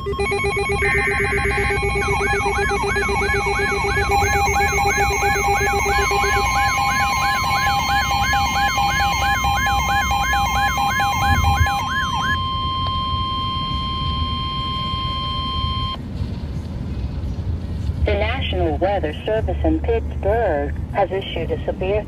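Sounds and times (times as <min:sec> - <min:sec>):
falling electronic siren sweep: 0:00.0 - 0:16.0
steady alert tone: 0:00.0 - 0:16.0.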